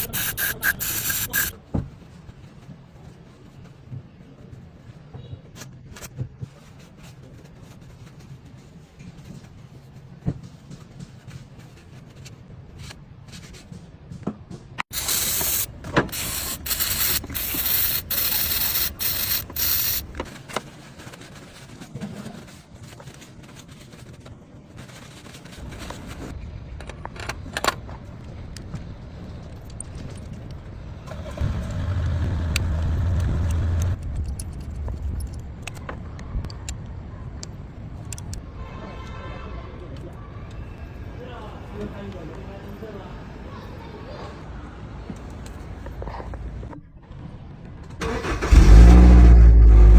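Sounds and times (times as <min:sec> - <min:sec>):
aerosol can spraying: 0:00.0 - 0:01.6, 0:14.9 - 0:20.1.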